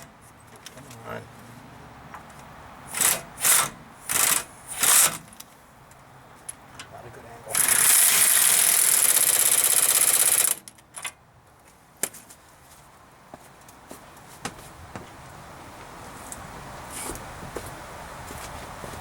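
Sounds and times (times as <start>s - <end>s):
light metal clicks and knocks: 5.9s - 7.0s.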